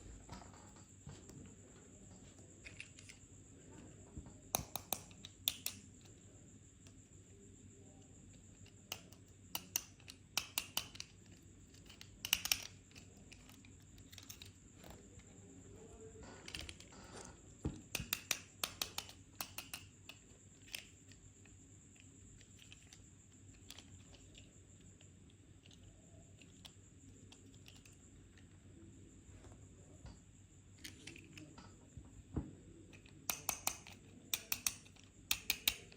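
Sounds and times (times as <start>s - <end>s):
small plastic clicks and taps: 4.2s - 6.1s, 8.6s - 15.0s, 16.5s - 21.3s, 32.4s - 35.9s.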